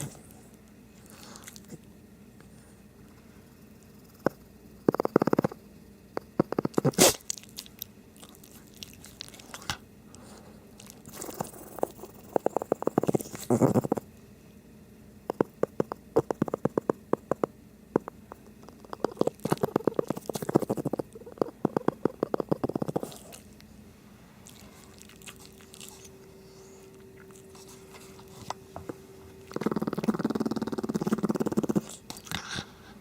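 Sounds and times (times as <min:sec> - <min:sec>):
dog snoring: 0:03.9 - 0:07.2, 0:11.0 - 0:14.1, 0:15.3 - 0:23.4, 0:29.4 - 0:32.7.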